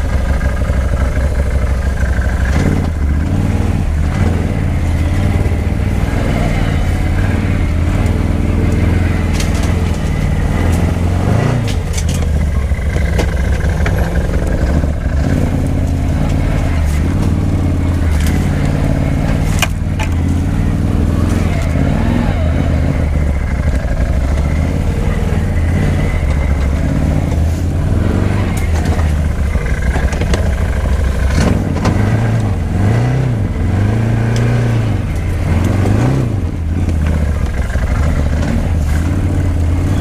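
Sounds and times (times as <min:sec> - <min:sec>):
atv engine running: 0:00.0 - 0:40.0
tires on gravel: 0:00.0 - 0:40.0
sharp clicks and knocks: 0:07.2 - 0:20.6, 0:23.2 - 0:33.2.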